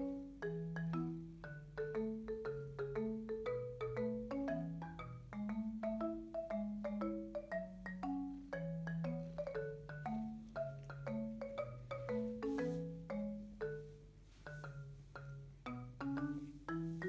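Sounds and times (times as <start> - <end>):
bouncy marimba tune with beat: 0.0 - 17.0.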